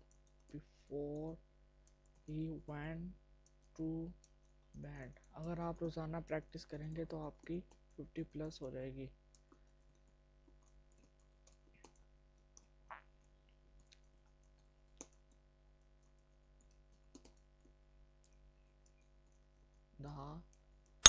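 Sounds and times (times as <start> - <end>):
keyboard keys typing: 0.0 - 0.6, 16.0 - 17.5
low electrical hum: 0.0 - 21.0.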